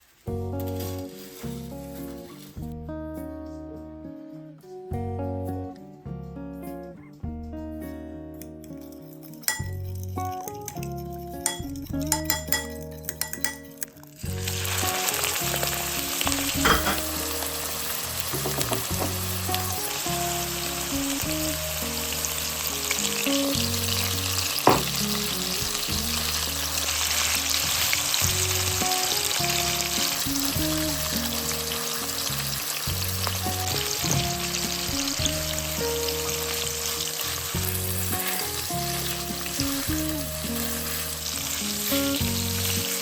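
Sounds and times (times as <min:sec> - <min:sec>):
soft background music: 0:00.0 - 0:43.0
food sizzling in a frying pan: 0:00.1 - 0:02.7, 0:11.4 - 0:43.0
stirring: 0:08.6 - 0:13.9
sharp utensil knock: 0:11.5 - 0:13.8, 0:16.3 - 0:17.2, 0:24.7 - 0:25.0.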